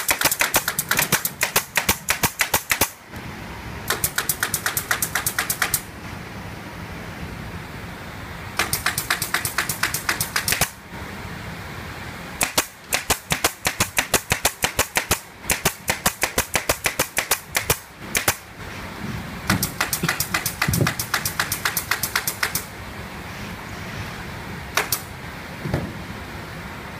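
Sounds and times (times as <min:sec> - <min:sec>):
pneumatic nail gun firing: 0:00.0 - 0:03.0, 0:03.9 - 0:05.9, 0:08.6 - 0:10.8, 0:12.4 - 0:18.5, 0:19.4 - 0:22.7, 0:24.7 - 0:25.1.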